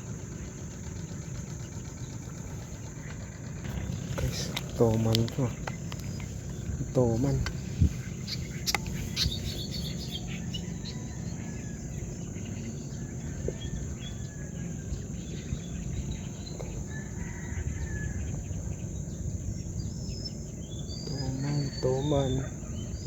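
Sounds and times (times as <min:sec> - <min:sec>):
high insect drone: 0:00.0 - 0:23.0
low background rumble: 0:00.0 - 0:23.0
short bird chirps: 0:08.0 - 0:11.0.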